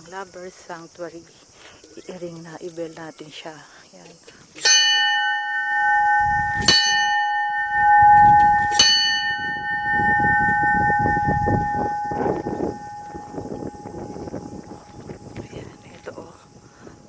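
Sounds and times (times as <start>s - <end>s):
large metal bell ringing: 4.6s - 16.4s
low rumbling noise: 4.9s - 16.1s.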